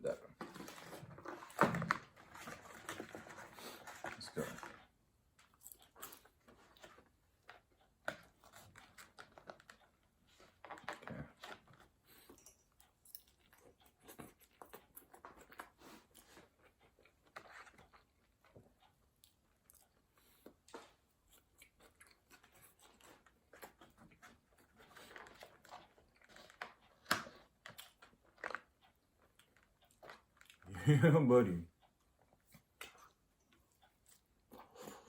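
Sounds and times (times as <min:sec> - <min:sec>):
chewing and wet mouth sounds: 0:05.4 - 0:30.7, 0:32.1 - 0:35.0.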